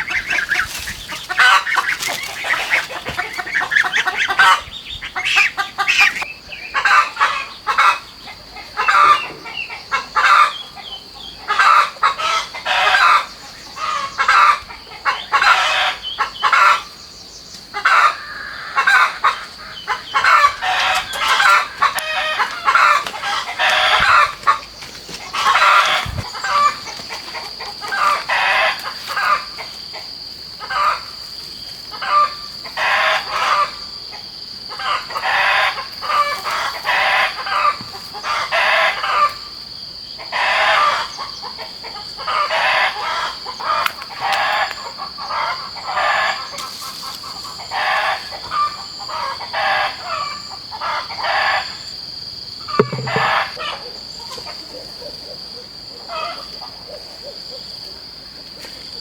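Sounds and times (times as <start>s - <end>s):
chickens clucking: 0.0s - 16.8s, 17.8s - 31.1s, 52.8s - 54.6s.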